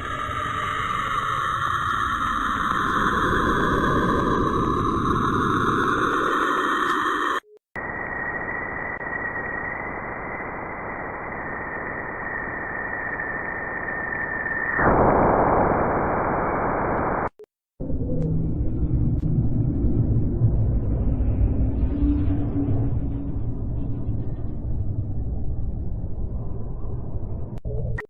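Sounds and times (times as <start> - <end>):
static hiss: 0.0 - 17.4.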